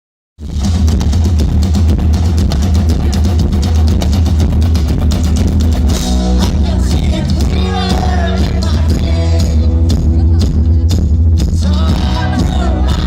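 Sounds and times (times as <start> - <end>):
rock music with drum beat: 0.4 - 13.0
singing voice: 6.0 - 13.0.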